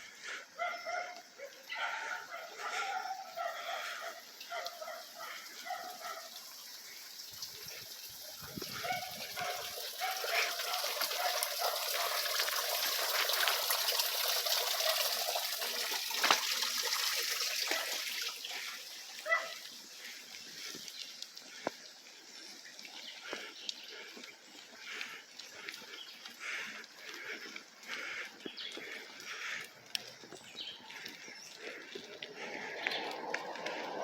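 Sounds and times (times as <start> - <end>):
water noise: 2.0 - 34.0.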